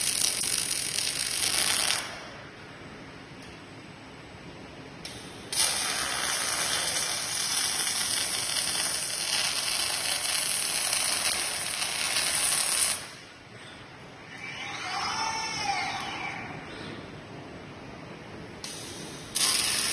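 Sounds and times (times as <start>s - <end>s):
welding arc burning: 0.0s - 2.4s, 5.0s - 13.3s, 18.6s - 19.9s.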